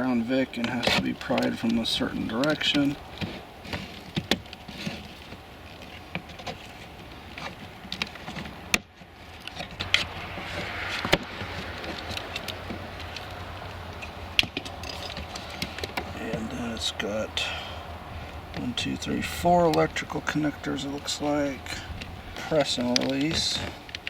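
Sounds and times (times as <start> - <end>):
plastic and metal clicks and cracks: 2.4 - 10.1, 21.9 - 24.0.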